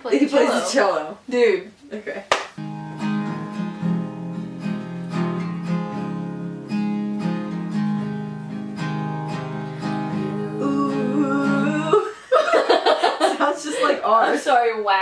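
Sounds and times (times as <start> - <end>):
acoustic guitar strumming: 2.5 - 12.2.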